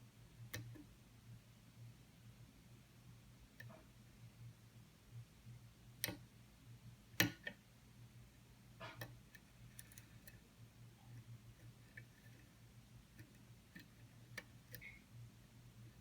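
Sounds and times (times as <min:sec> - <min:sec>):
lock pick clicking and scraping: 0:08.8 - 0:10.4.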